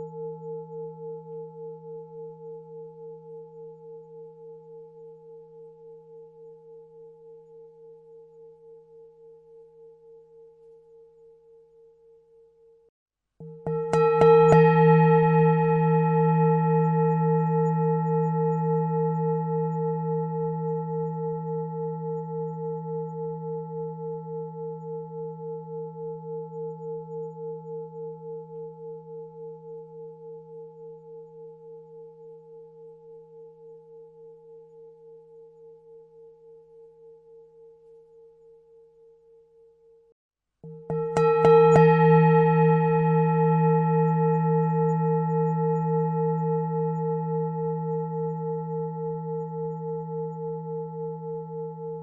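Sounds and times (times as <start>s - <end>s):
singing bowl ringing: 0.0s - 52.0s.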